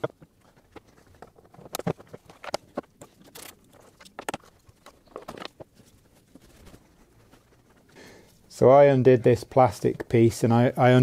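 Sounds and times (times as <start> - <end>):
tools and parts clicking: 0.8 - 5.6.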